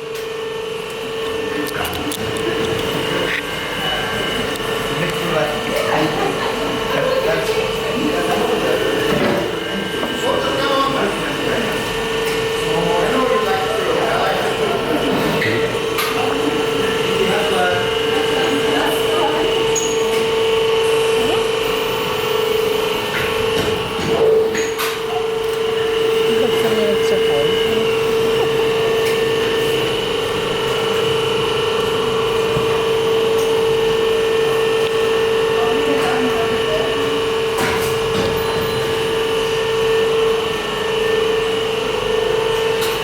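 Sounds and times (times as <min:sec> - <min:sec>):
factory machinery whining: 0:00.0 - 0:43.0.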